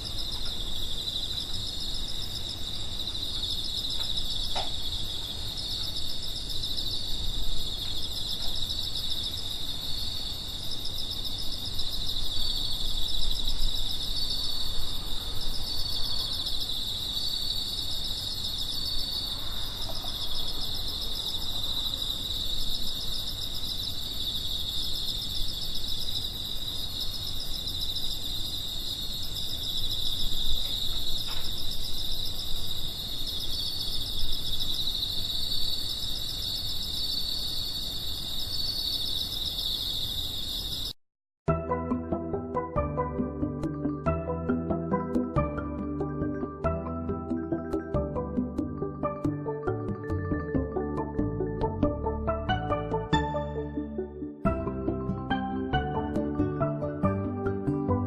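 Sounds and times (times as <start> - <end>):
crickets trilling: 0.0 - 41.0
pulsed insect chirping: 0.0 - 41.0.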